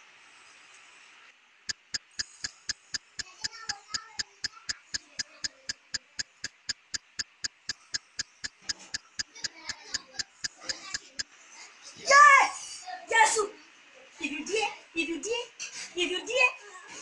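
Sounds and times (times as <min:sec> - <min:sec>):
fast even ticking: 0:01.7 - 0:11.2.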